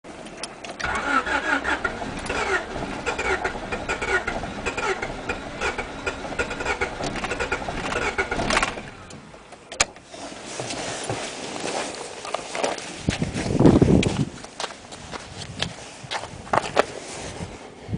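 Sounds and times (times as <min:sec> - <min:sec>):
car engine cranking: 0:00.1 - 0:10.8.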